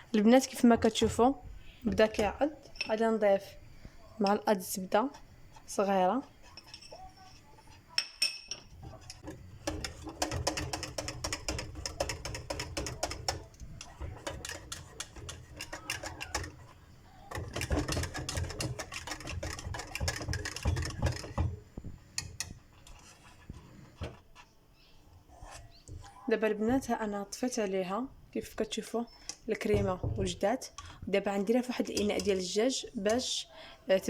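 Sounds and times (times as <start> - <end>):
whisk clicking against pan: 8.8 - 23.1.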